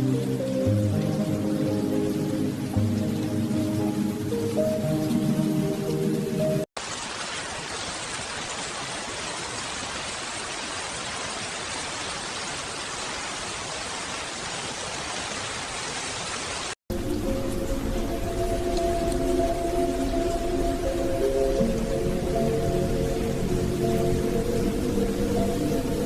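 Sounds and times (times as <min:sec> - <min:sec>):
soft music with sustained tones: 0:00.0 - 0:06.7, 0:16.9 - 0:26.0
steady rain hiss: 0:00.0 - 0:26.0.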